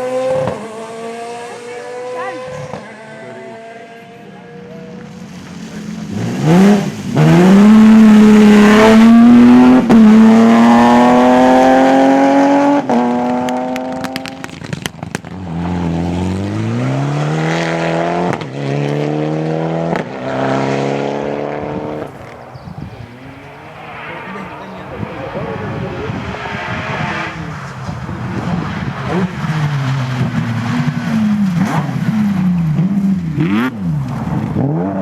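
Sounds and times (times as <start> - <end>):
rally car accelerating: 0.0 - 35.0
exhaust pops: 12.9 - 15.9, 21.6 - 34.7.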